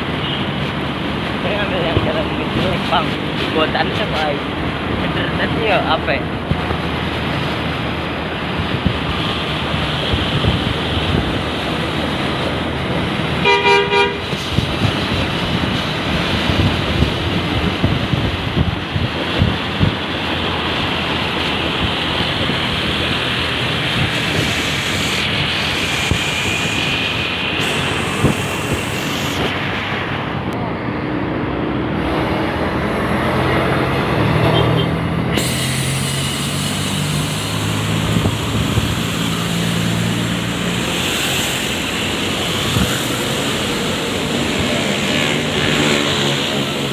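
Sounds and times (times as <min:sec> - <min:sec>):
wind buffeting microphone: 0:00.0 - 0:13.4, 0:14.1 - 0:35.4, 0:36.7 - 0:46.9
bus engine hum: 0:00.0 - 0:46.9
vehicle road noise: 0:00.0 - 0:46.9.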